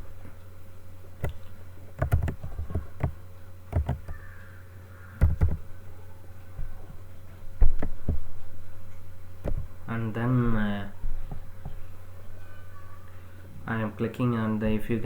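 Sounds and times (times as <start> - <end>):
low electrical hum: 0.0 - 15.0
computer mouse and keyboard clicks: 1.2 - 4.2, 5.2 - 5.6, 9.4 - 9.7.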